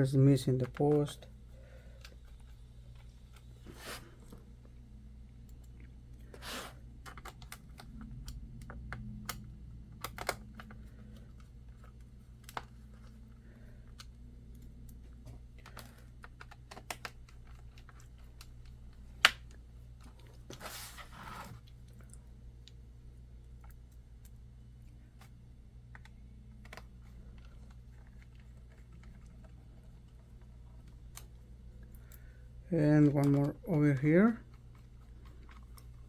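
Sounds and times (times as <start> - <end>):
handling rustle: 10.4 - 21.9.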